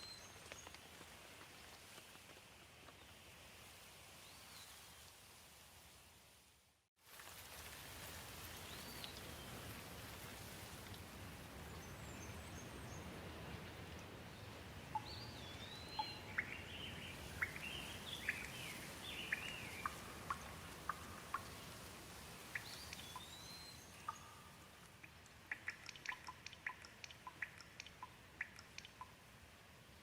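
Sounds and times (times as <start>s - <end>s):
birds chirping: 14.9s - 21.8s, 22.5s - 29.2s
water dripping: 14.9s - 29.5s.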